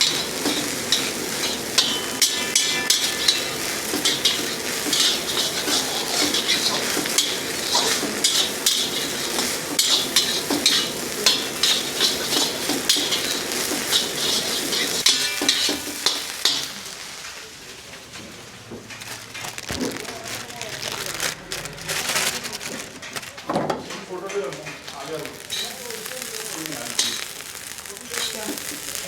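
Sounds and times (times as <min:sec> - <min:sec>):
metal ladle scraping wok: 0:00.0 - 0:17.2, 0:25.3 - 0:25.8, 0:26.9 - 0:29.0
food sizzling in hot oil: 0:00.0 - 0:19.8, 0:24.6 - 0:29.0.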